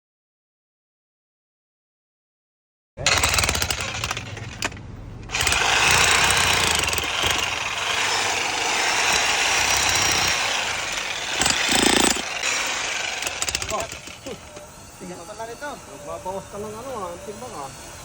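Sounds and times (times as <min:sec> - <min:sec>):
jackhammer breaking concrete: 0:03.0 - 0:04.6, 0:05.3 - 0:14.5.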